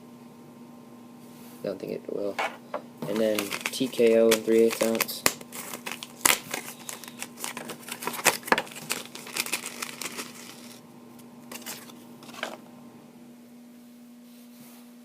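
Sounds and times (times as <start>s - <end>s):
plastic package crinkling: 3.0s - 10.8s, 11.5s - 12.6s.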